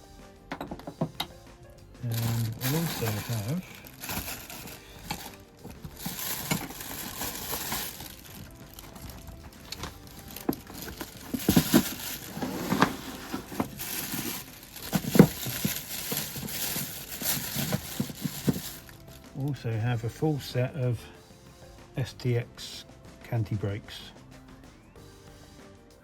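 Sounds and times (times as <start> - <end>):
packaging crinkling and rustling: 2.0 - 19.2.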